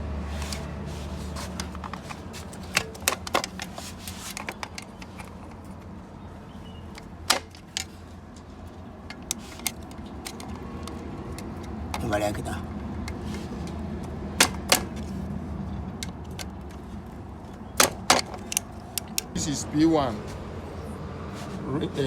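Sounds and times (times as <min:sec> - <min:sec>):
metallic clicks and knocks: 0:01.6 - 0:06.0, 0:06.9 - 0:12.0, 0:13.0 - 0:15.1, 0:17.4 - 0:19.4.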